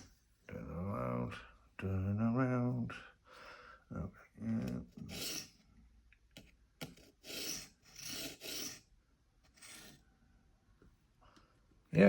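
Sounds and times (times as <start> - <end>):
sharpening stone scraping blade: 5.1 - 5.6, 7.0 - 8.9.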